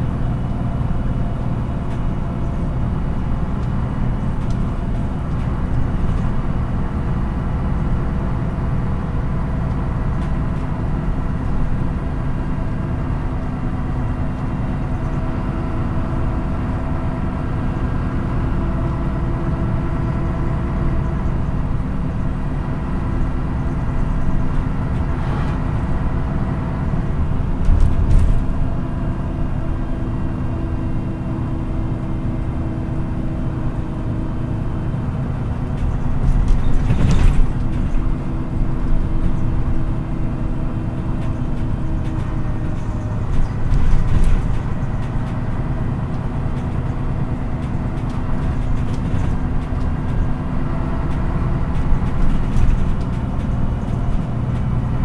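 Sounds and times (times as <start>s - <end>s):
bus diesel engine humming: 0.0s - 55.0s
low road rumble: 0.0s - 55.0s
knocks and rattles: 35.7s - 38.3s.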